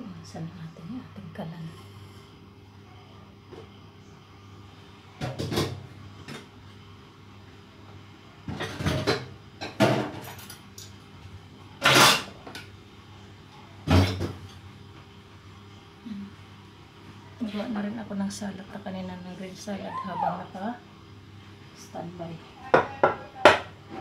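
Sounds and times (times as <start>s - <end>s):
pots and utensils clunking: 8.5s - 10.6s, 11.8s - 12.6s.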